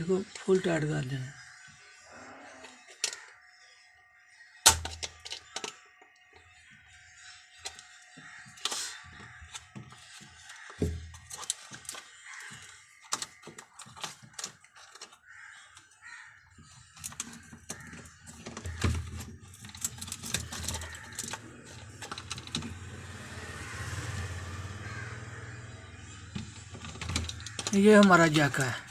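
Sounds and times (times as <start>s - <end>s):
hand tools clicking and tapping: 8.6s - 15.9s, 16.6s - 22.8s, 26.3s - 28.9s.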